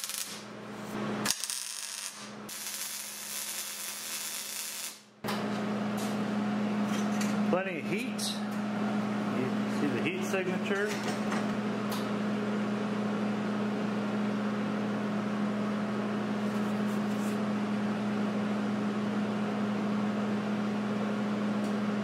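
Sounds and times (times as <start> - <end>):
steady machine hum: 0.0 - 22.0.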